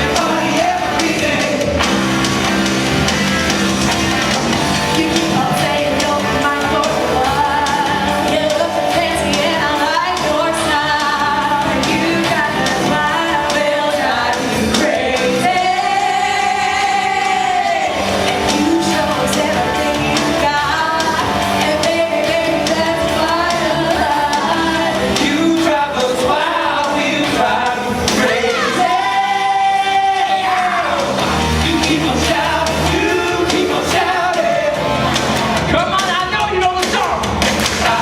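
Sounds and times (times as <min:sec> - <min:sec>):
person singing: 0:00.0 - 0:02.0, 0:04.7 - 0:34.8
backing band music: 0:00.0 - 0:38.0.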